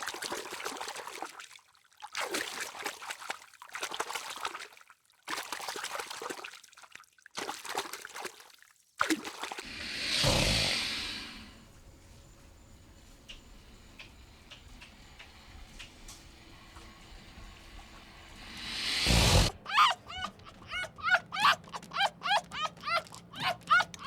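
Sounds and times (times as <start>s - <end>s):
water trickling and splashing: 0.0s - 9.8s.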